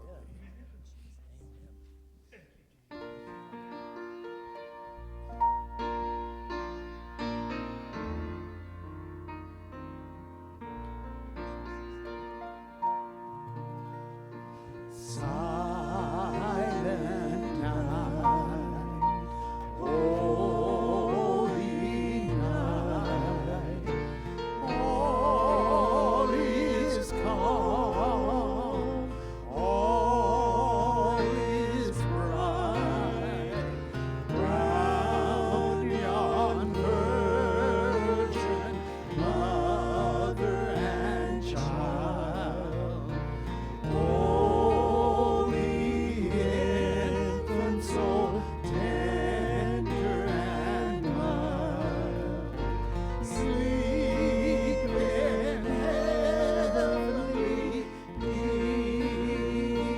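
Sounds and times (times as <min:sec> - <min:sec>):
voices singing with vibrato: 0:14.9 - 0:59.9
held bass notes: 0:15.2 - 0:59.9.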